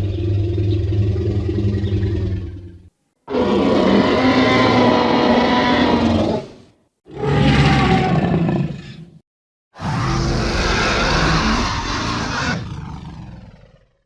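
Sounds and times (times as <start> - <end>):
deep dinosaur roar: 0.0 - 9.1, 9.8 - 14.0.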